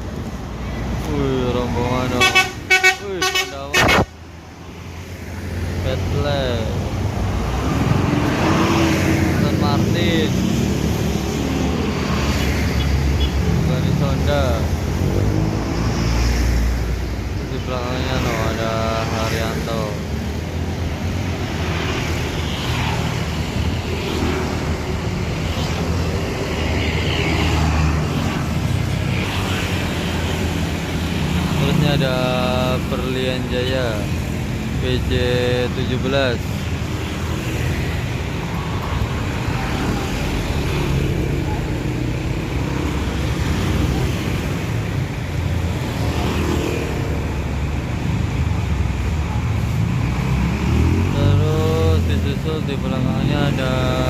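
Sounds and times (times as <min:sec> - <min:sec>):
bus diesel engine rumbling: 0:00.0 - 0:05.0, 0:30.1 - 0:46.0, 0:51.1 - 0:54.0.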